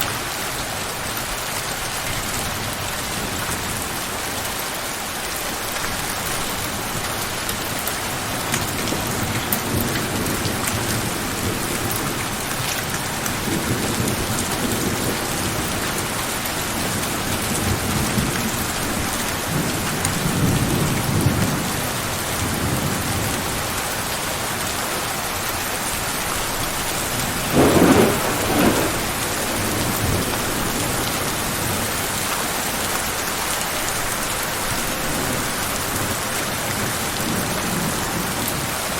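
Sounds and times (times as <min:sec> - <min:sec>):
heavy rain falling: 0:00.0 - 0:38.9
distant thunder rumbling: 0:26.5 - 0:31.9.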